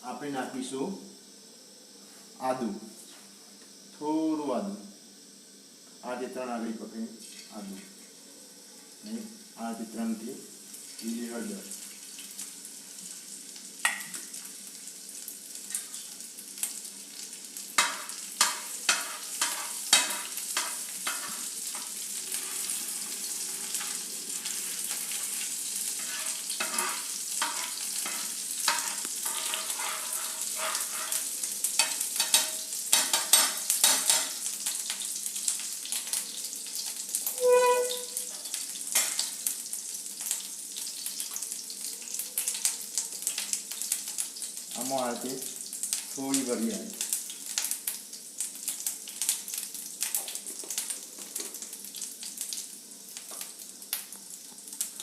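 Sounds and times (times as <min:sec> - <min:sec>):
sizzling in hot oil: 0:07.2 - 0:55.0
spoon clicking and scraping pan: 0:17.8 - 0:21.8, 0:26.0 - 0:34.4
brief tone: 0:37.4 - 0:38.3.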